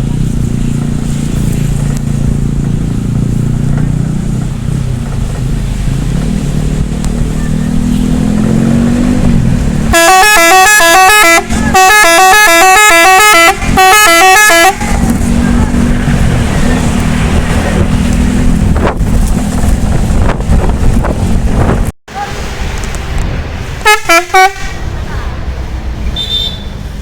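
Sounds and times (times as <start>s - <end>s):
bus engine running: 0.0s - 27.0s
multi-trumpet air horn tune: 9.9s - 14.8s, 23.8s - 24.8s.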